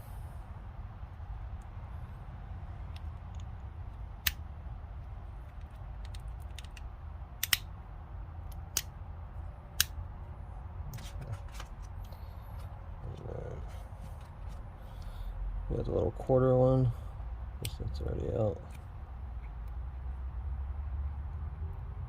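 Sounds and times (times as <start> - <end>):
sharp metal clicks: 5.4 - 7.7, 8.4 - 9.0.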